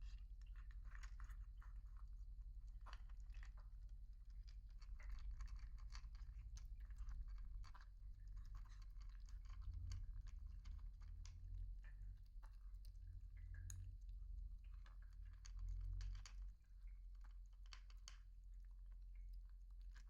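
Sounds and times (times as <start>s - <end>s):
pets crunching food: 0.4s - 12.8s.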